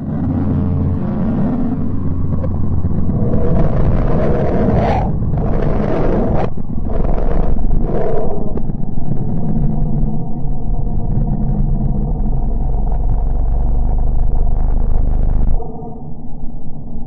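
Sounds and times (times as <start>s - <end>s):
low rough rumbling drone: 0.0s - 17.0s.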